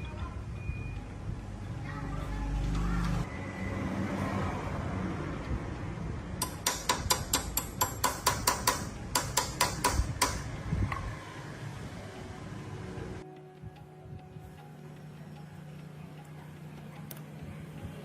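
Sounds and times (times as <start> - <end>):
hammer striking metal: 6.4 - 10.6.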